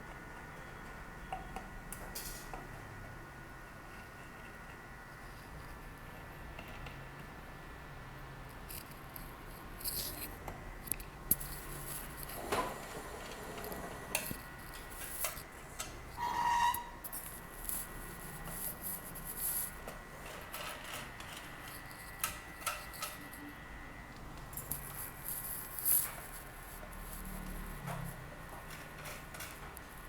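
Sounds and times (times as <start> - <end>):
tools scraping and clicking on parts: 8.6 - 12.6, 13.6 - 23.5, 24.5 - 30.0
brief squeak: 16.2 - 17.0.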